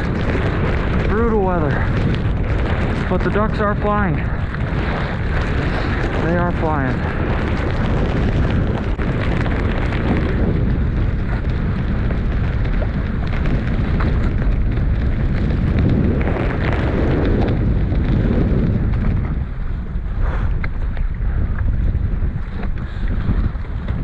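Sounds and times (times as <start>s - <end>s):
wind buffeting microphone: 0.0s - 24.0s.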